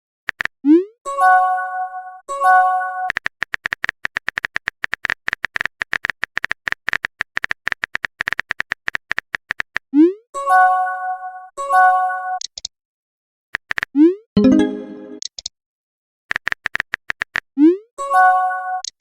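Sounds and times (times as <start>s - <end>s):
virtual keyboard typing clicks: 3.1s - 9.8s, 12.4s - 12.7s, 16.3s - 17.4s.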